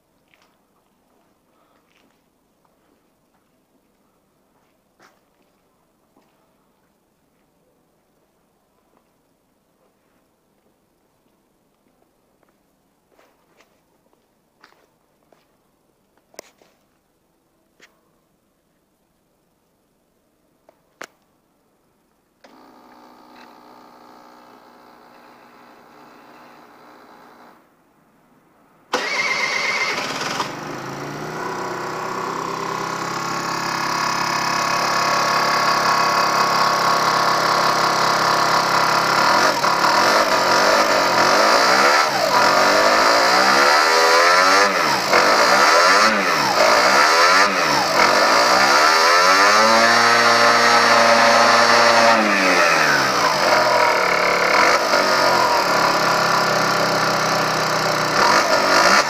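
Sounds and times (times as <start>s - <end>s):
scooter engine idling and revving: 22.4s - 27.6s, 28.9s - 59.0s.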